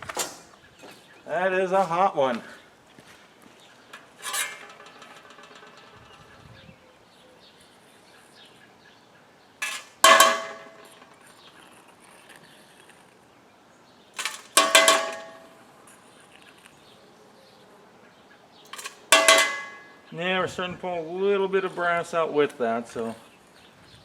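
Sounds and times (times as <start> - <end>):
metal tool clanging against metal: 0.0 - 0.5, 3.9 - 6.4, 9.6 - 11.1, 14.2 - 15.6, 18.7 - 20.0.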